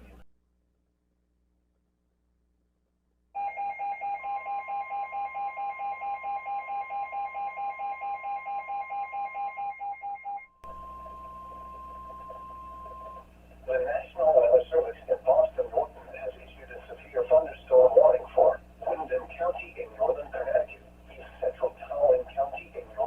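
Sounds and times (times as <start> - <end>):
steady alarm tone: 3.4 - 23.0
radio hiss: 10.8 - 23.0.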